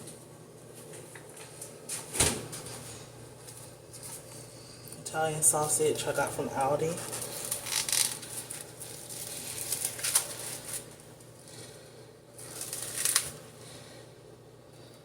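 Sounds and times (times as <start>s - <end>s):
plastic packaging crinkling: 7.0s - 11.8s, 12.4s - 13.5s.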